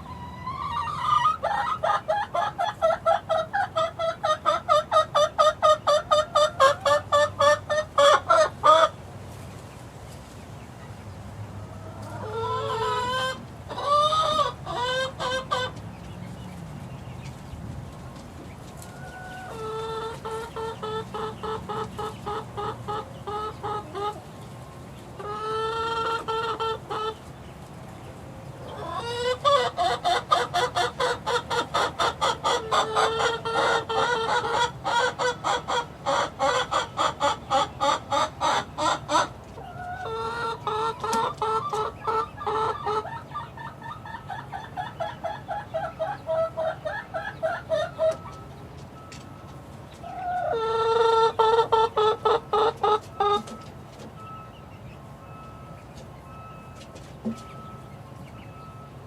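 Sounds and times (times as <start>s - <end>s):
chickens clucking: 0.0s - 59.0s.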